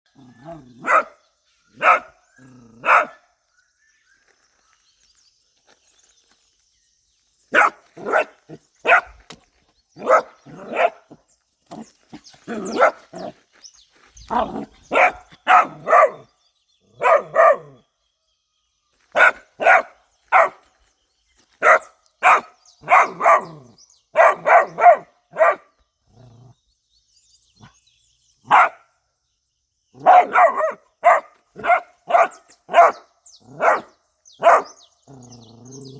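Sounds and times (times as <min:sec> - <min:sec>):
dog barking: 0:00.8 - 0:01.2, 0:01.8 - 0:02.2, 0:02.8 - 0:03.2, 0:07.5 - 0:09.2, 0:10.0 - 0:11.1, 0:12.5 - 0:13.3, 0:14.3 - 0:16.3, 0:17.0 - 0:17.8, 0:19.2 - 0:20.6, 0:21.6 - 0:25.7, 0:28.5 - 0:28.8, 0:30.0 - 0:34.8.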